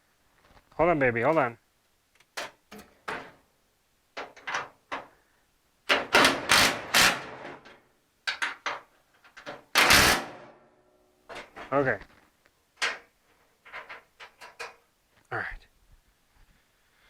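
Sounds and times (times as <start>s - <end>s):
tools knocking and clanking: 2.4s - 3.4s, 4.2s - 5.1s, 5.9s - 10.0s, 12.8s - 14.8s.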